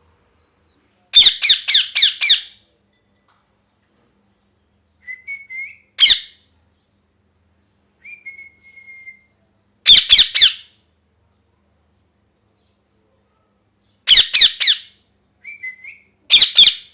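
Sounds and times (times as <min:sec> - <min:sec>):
parrot harsh squawks: 0:01.2 - 0:02.6, 0:06.0 - 0:06.4, 0:09.8 - 0:10.7, 0:14.1 - 0:14.9, 0:16.3 - 0:16.9.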